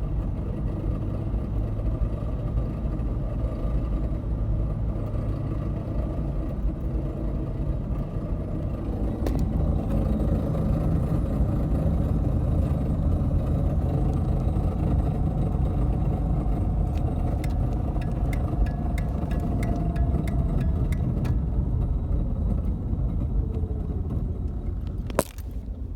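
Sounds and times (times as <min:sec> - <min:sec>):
car engine rumble while driving: 0:00.0 - 0:25.9
thin steady whine: 0:08.3 - 0:24.7.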